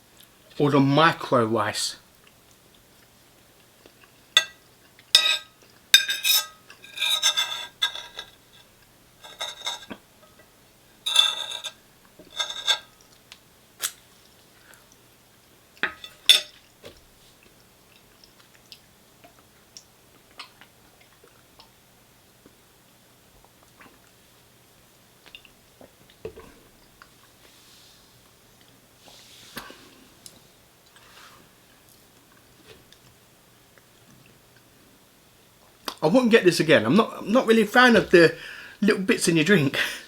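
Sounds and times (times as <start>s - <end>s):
cutlery scraping food container: 5.2s - 8.3s, 9.3s - 10.0s, 11.1s - 12.9s.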